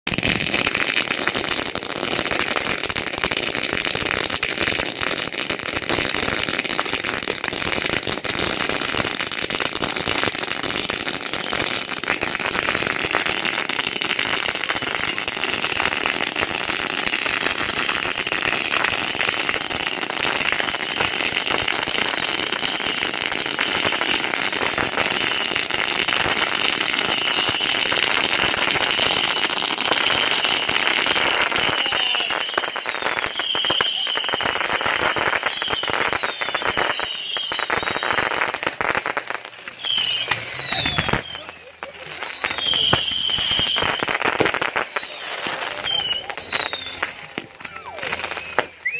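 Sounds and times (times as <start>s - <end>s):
fireworks crackling: 0.1s - 48.9s.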